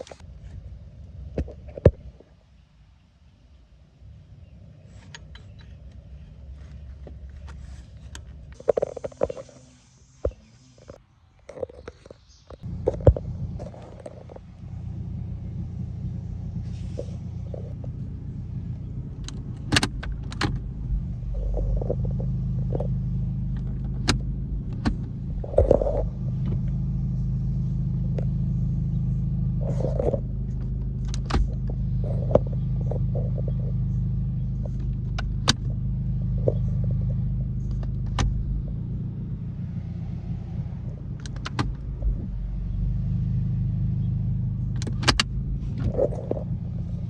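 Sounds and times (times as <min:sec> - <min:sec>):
car engine idling: 0:00.0 - 0:47.0
metallic clicks and clunks: 0:19.2 - 0:20.7, 0:21.4 - 0:26.8, 0:29.9 - 0:33.9, 0:41.1 - 0:42.2, 0:44.7 - 0:46.6.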